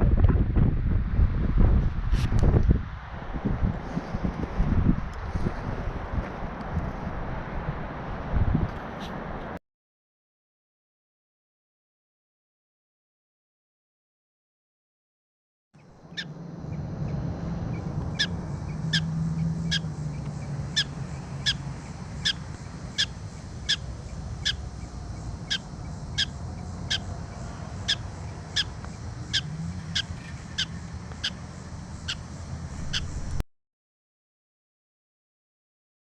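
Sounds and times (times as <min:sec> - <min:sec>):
wind rumble on microphone: 0:00.0 - 0:09.6, 0:16.1 - 0:33.4
bird short sharp calls: 0:32.8 - 0:33.2.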